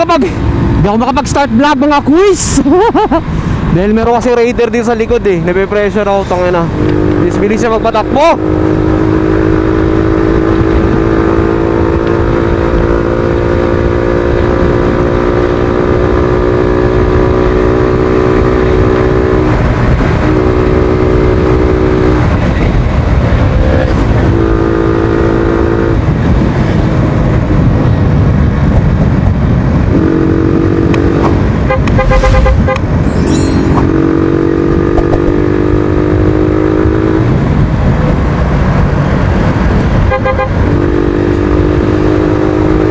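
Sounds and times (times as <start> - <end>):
wind rumble on microphone: 0.0 - 24.6, 25.6 - 42.9
vehicle horn toot: 31.7 - 34.1, 40.1 - 40.6.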